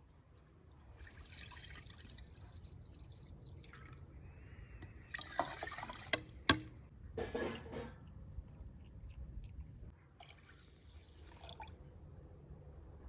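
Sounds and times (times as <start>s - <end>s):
water splashing and dripping: 5.0s - 6.8s.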